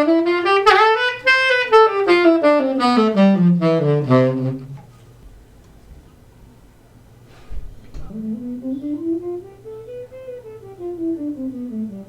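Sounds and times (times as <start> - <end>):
saxophone playing notes: 0.0 - 4.9, 8.0 - 12.0.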